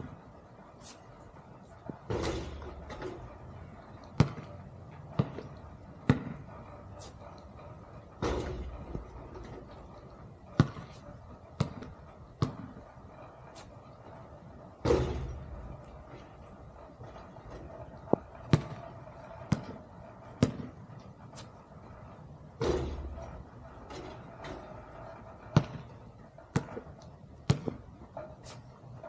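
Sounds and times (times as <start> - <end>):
basketball bouncing on court: 2.0 - 3.4, 4.0 - 6.7, 8.2 - 13.6, 14.8 - 21.0, 22.6 - 28.3.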